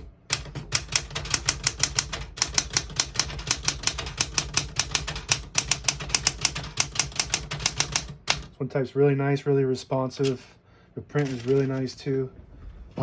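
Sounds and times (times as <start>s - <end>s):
manual typewriter typing: 0.0s - 8.6s, 10.2s - 10.4s, 11.1s - 11.9s.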